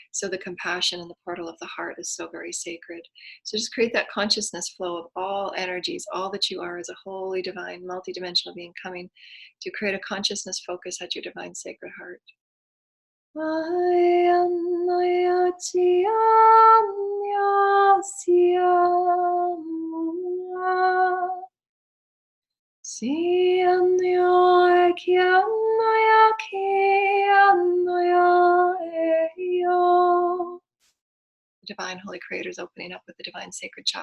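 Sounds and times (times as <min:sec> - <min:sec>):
woman singing unaccompanied: 0:13.4 - 0:21.5, 0:22.9 - 0:30.6.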